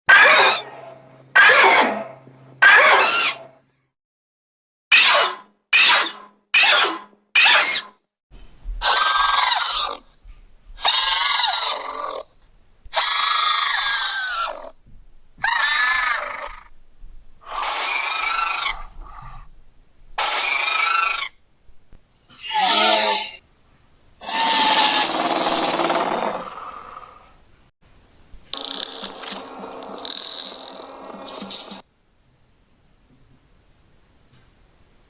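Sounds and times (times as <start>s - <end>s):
creature shrieks: 0.1s - 0.8s, 1.4s - 3.4s, 4.9s - 7.9s, 8.8s - 10.1s, 10.8s - 12.3s, 12.9s - 14.7s, 15.4s - 16.7s, 17.4s - 19.4s, 20.2s - 21.4s, 22.4s - 23.4s, 24.2s - 27.2s
creature warbling screeches: 0.1s - 0.8s, 1.4s - 3.4s, 4.9s - 7.9s, 8.8s - 10.1s, 10.8s - 12.3s, 12.9s - 14.7s, 15.4s - 16.7s, 17.4s - 19.4s, 20.2s - 21.4s, 22.3s - 23.4s, 24.2s - 27.2s.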